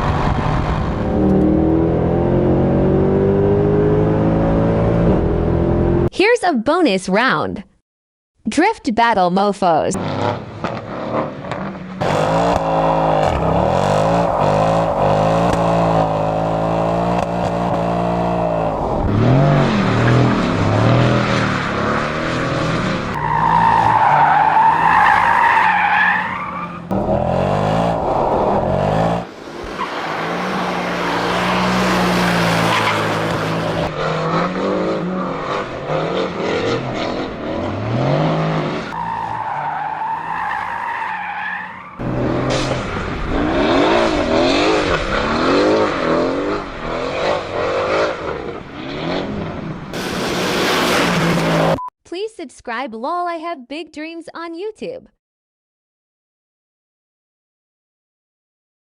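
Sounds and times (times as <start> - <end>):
car engine revving: 0.0 - 6.1, 10.0 - 40.3, 41.6 - 51.8.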